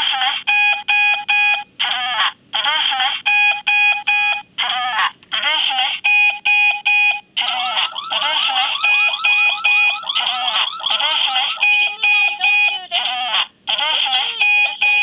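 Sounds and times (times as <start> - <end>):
warbling siren alarm: 6.1 - 12.8, 14.4 - 15.0
short steady beeps: 11.4 - 12.8.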